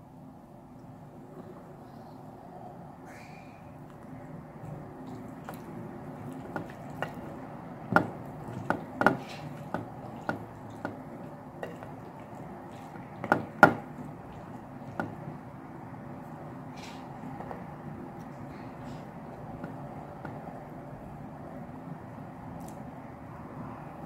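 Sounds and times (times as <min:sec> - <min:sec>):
wet squishing: 0:03.8 - 0:15.5.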